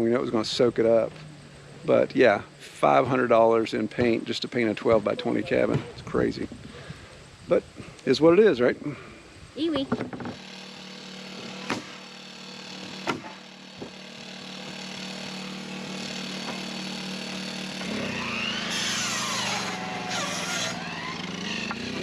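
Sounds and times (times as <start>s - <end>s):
power saw cutting wood: 9.7s - 22.0s.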